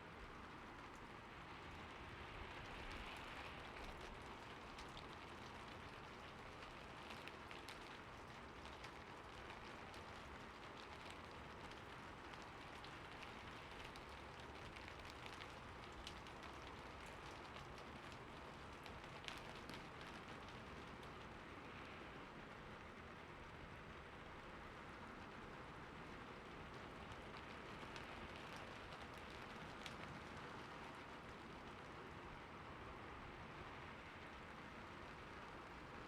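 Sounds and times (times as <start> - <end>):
soft rain falling: 0.0 - 36.0.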